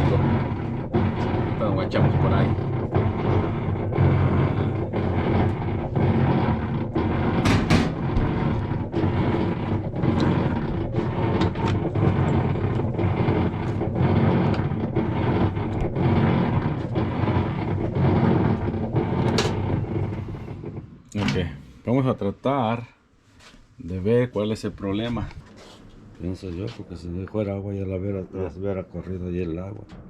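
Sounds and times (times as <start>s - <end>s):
washing machine grinding: 0.0s - 22.0s.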